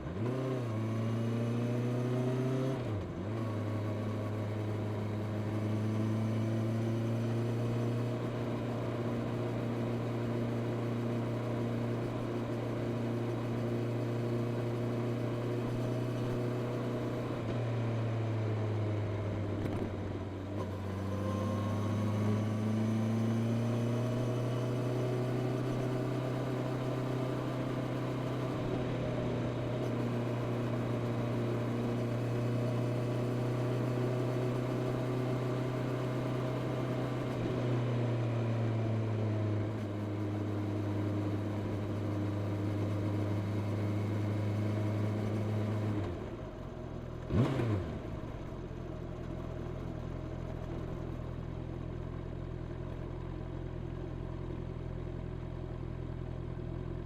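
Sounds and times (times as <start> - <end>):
motorcycle engine riding: 0.0 - 53.0.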